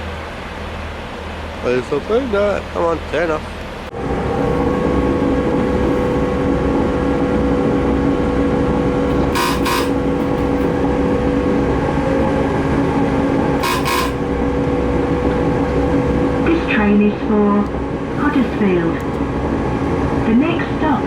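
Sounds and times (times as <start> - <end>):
train engine drone: 0.0 - 21.0
door warning double beep: 9.1 - 10.7, 13.6 - 14.3.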